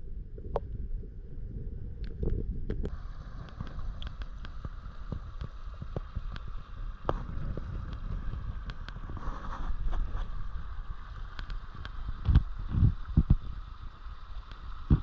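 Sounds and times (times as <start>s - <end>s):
creek water gurgling and sloshing: 2.0s - 15.0s.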